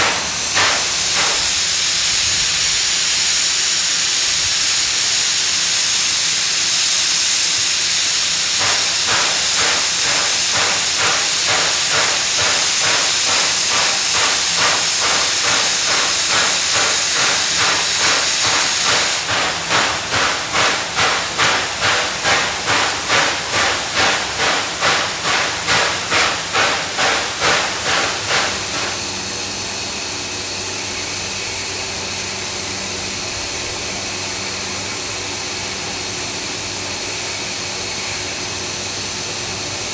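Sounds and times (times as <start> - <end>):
steam locomotive puffing: 0.0 - 29.8.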